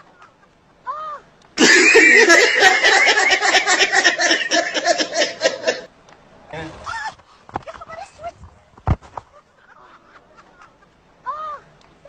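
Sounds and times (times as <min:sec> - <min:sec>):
people laughing loudly: 0:01.6 - 0:05.9.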